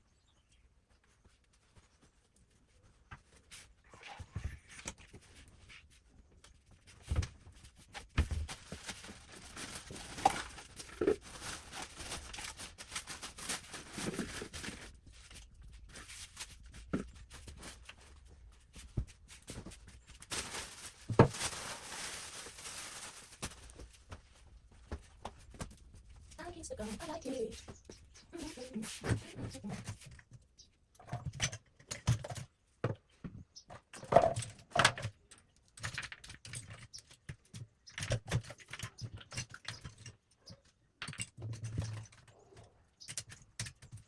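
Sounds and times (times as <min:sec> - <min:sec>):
rustling and scraping: 0:00.8 - 0:30.4.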